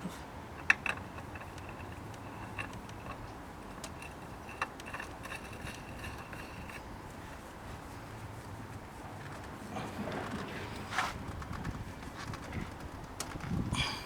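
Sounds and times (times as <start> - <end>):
oil filter clicking and knocking: 0.5 - 6.9.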